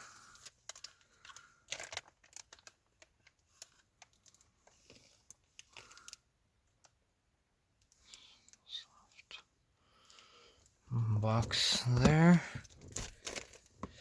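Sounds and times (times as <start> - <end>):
packaging crinkling: 0.7 - 5.0, 11.5 - 13.7.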